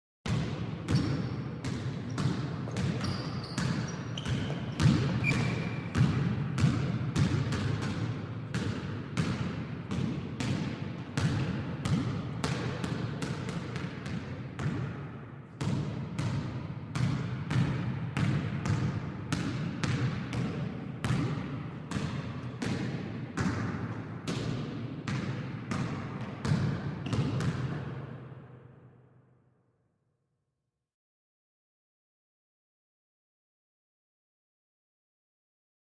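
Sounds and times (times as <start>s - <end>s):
basketball bouncing on court: 0.3s - 28.3s.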